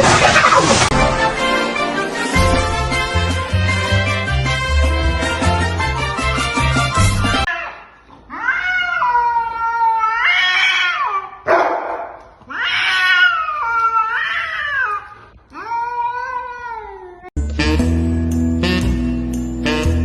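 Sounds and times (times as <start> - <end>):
music: 0.9 - 7.5, 17.4 - 20.0
cat yowling: 7.5 - 11.5, 12.5 - 17.3.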